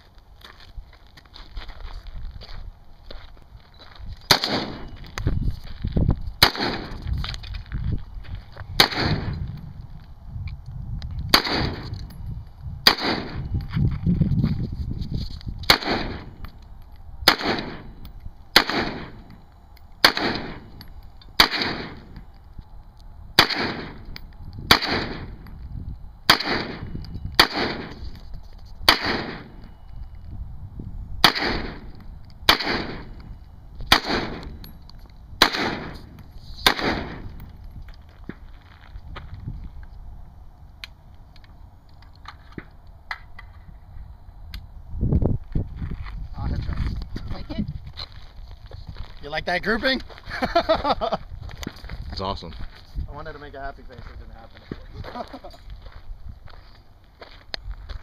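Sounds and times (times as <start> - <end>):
rifle firing single shots: 4.3 - 5.0, 6.4 - 7.0, 8.8 - 9.4, 11.3 - 12.0, 12.8 - 13.4, 15.7 - 16.4, 17.2 - 19.3, 20.0 - 20.8, 21.4 - 22.2, 23.4 - 25.4, 26.3 - 28.0, 28.9 - 29.7, 31.2 - 33.2, 33.9 - 34.7, 35.4 - 37.4.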